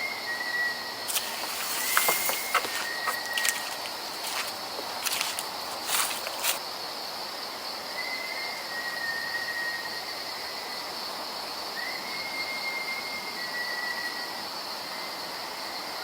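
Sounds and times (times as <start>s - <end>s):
high-pitched insect chorus: 0.0s - 16.0s
faint level whistles: 8.0s - 10.3s, 11.8s - 15.1s.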